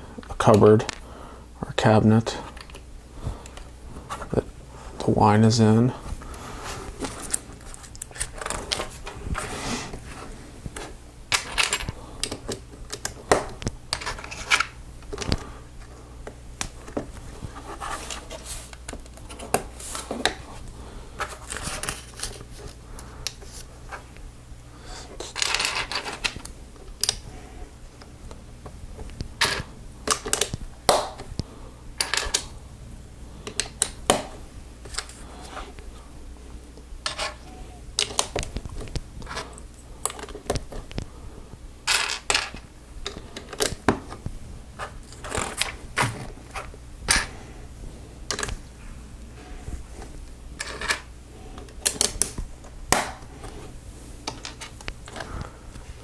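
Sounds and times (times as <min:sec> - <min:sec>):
plastic pieces rattling: 0:25.3 - 0:26.5.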